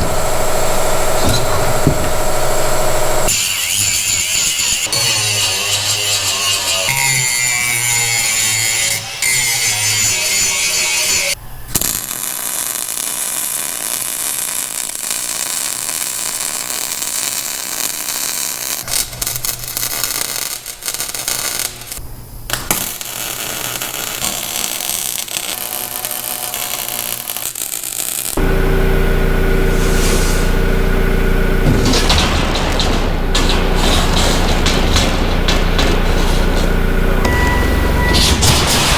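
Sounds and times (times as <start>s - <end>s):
machine humming: 0.0s - 3.4s, 28.4s - 38.9s
electric welding buzz: 0.0s - 38.9s.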